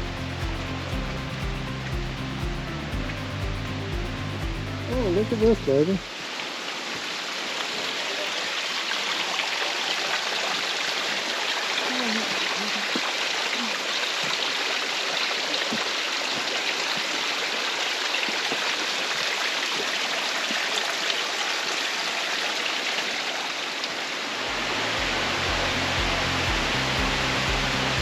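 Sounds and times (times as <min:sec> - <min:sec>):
background music: 0:00.0 - 0:06.1, 0:24.5 - 0:28.0
creek rushing over rock: 0:00.0 - 0:28.0.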